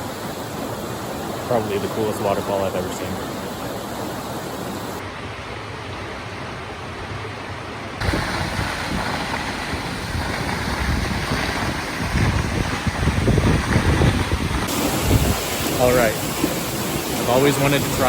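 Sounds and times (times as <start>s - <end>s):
waterfall roaring: 0.0s - 18.0s
wind buffeting microphone: 8.0s - 18.0s.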